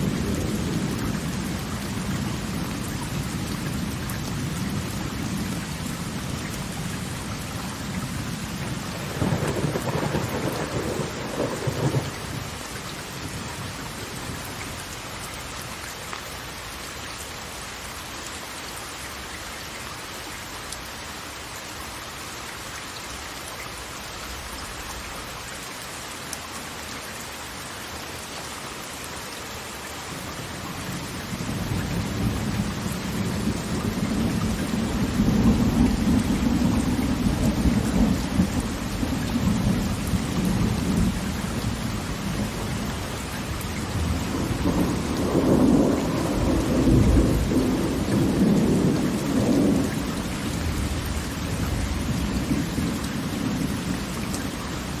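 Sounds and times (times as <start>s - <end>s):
rushing falling water: 0.0s - 55.0s.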